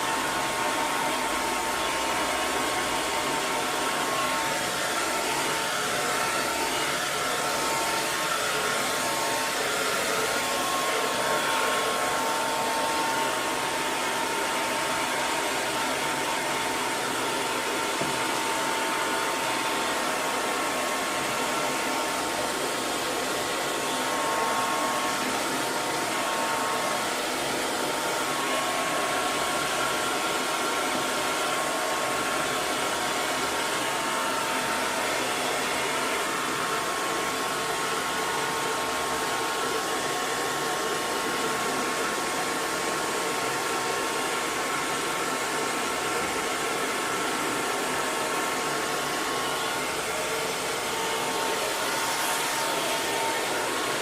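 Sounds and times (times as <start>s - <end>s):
hair dryer running: 0.0s - 54.0s.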